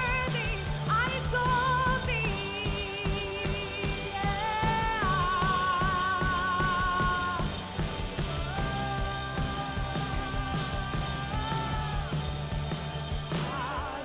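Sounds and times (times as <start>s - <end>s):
worship band playing slow song: 0.0s - 14.0s.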